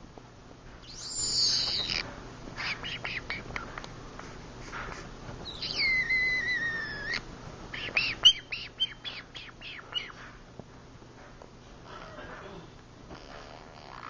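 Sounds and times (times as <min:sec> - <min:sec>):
parrot short chirps: 0:00.9 - 0:02.0, 0:05.5 - 0:07.2
parrot wavering whistle: 0:00.9 - 0:02.0, 0:05.4 - 0:07.2.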